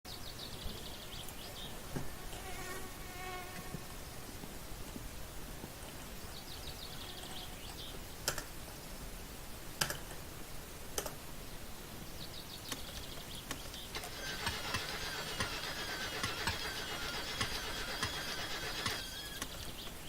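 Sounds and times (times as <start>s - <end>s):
car starter clicking rapidly: 13.8s - 19.6s.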